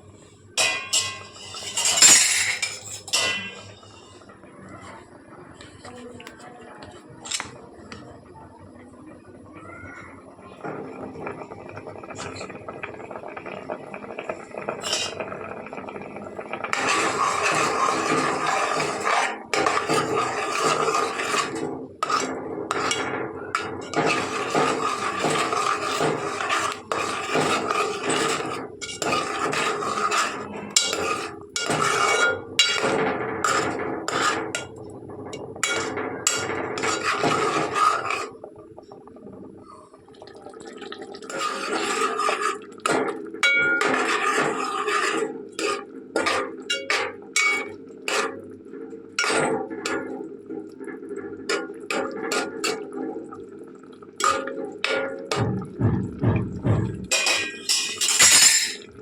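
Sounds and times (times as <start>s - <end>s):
metal utensils clinking on pots: 0.6s - 4.2s, 14.8s - 15.3s, 16.7s - 38.3s, 41.2s - 48.4s, 49.2s - 50.2s, 54.2s - 55.6s, 56.4s - 59.0s.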